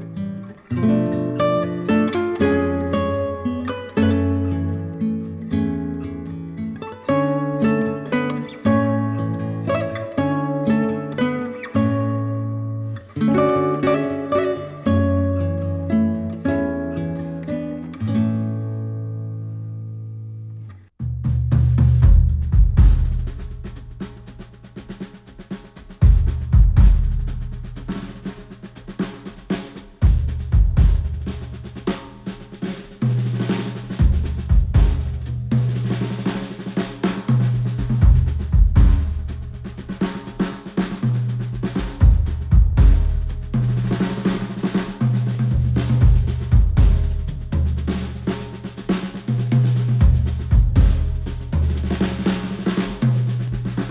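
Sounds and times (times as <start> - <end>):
drum groove with heavy bass: 21.0 - 53.9.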